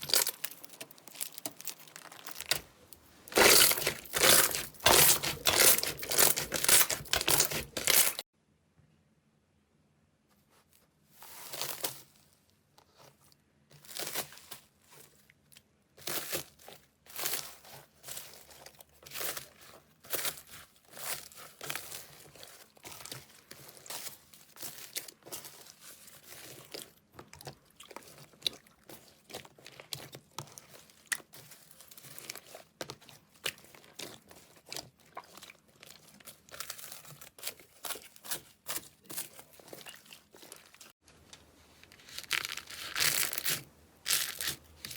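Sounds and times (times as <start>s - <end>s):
slime crackling and popping: 0.0s - 2.7s, 3.3s - 8.2s, 42.0s - 44.9s.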